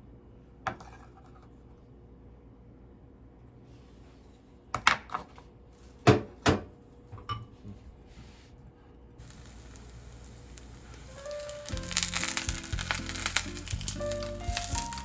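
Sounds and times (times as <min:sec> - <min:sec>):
dishes knocking and clattering: 0:06.1 - 0:07.8
faint steady hiss: 0:09.2 - 0:15.0.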